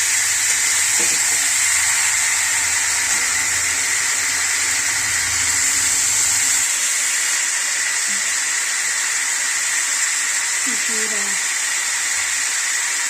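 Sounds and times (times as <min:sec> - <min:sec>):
chicken sizzling in a pan: 0:00.0 - 0:08.8.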